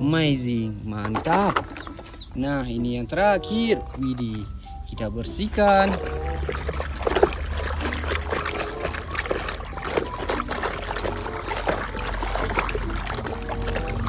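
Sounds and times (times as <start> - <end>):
water splashing and trickling: 0.0 - 14.0.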